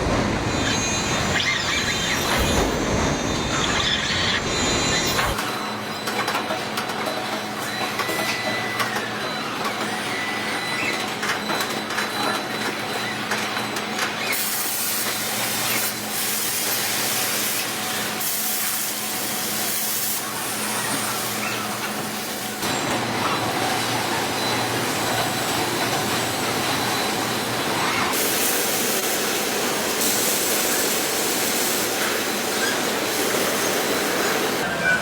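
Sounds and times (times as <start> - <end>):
factory machinery noise: 0.0 - 35.0.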